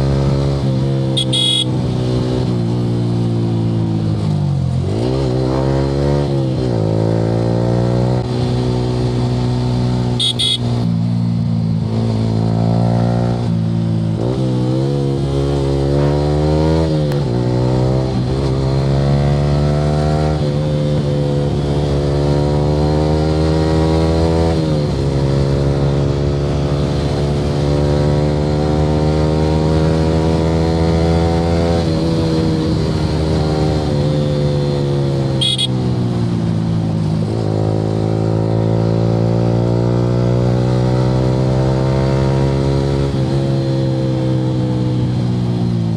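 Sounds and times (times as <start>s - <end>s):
motorcycle engine revving: 0.0s - 45.9s
short high-pitched beep: 1.2s - 1.7s, 35.4s - 35.7s.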